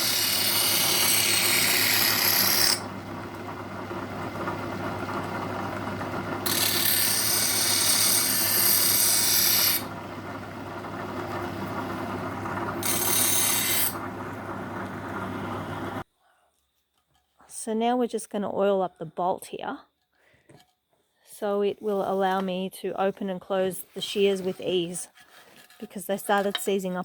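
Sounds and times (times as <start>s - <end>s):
electric grinder motor humming: 0.0s - 16.0s.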